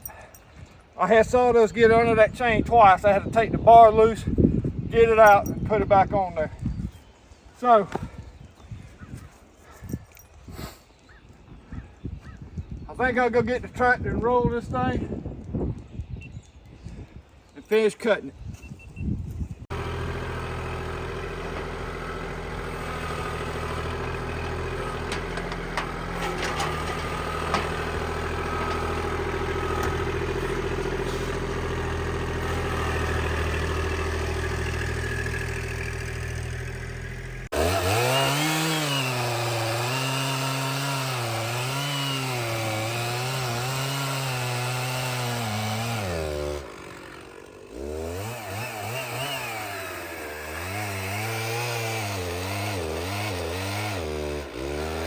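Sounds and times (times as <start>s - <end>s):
engine revving up and down: 19.7s - 55.0s
tractor engine running: 19.7s - 55.0s.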